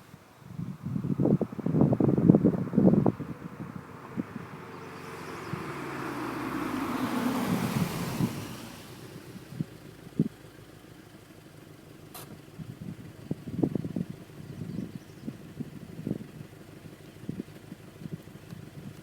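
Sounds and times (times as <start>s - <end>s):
tyre and road noise: 0.0s - 19.0s
car engine passing by: 0.8s - 11.0s.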